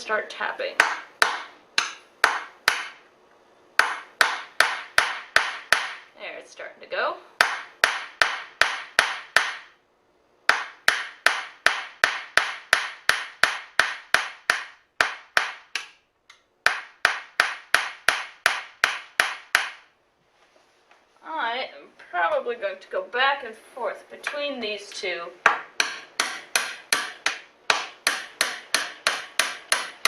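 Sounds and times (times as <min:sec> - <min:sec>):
hammer tapping a pin: 0:00.8 - 0:03.0, 0:03.8 - 0:06.1, 0:07.4 - 0:09.7, 0:10.5 - 0:19.9, 0:25.4 - 0:30.0.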